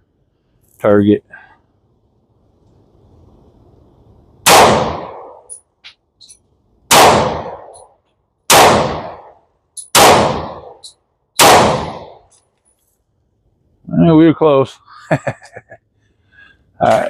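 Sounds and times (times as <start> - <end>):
pistol shots: 4.4 - 5.6, 6.9 - 7.8, 8.5 - 12.2
faint metal clinks: 12.3 - 13.0.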